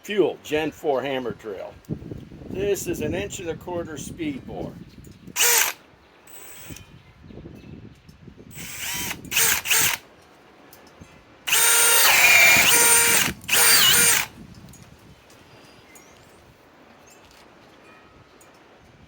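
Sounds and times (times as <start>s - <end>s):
cordless drill boring into wood: 5.4s - 6.8s, 8.5s - 10.0s, 11.5s - 14.3s.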